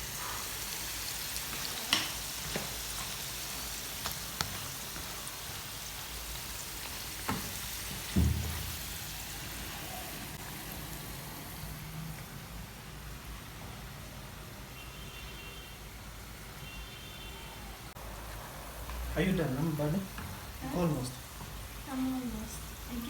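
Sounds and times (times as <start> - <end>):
potatoes sizzling in hot oil: 0.0 - 12.2, 18.7 - 23.0
loud knock: 8.0 - 9.0.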